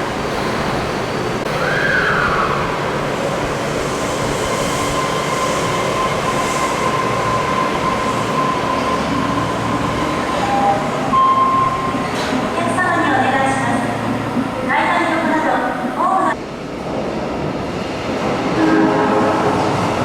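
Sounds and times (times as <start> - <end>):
subway train wheels on rail: 0.0 - 20.0
high-pitched train whine: 1.4 - 14.3.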